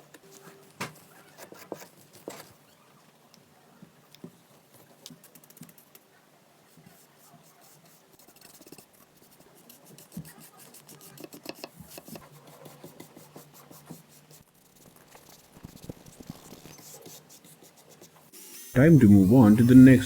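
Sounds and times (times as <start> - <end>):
sandpaper rubbing wood: 18.5 - 20.0.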